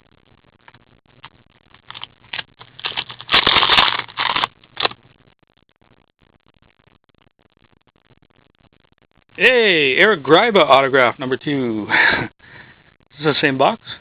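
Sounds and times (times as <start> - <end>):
foil card packs crackling: 1.7 - 5.0.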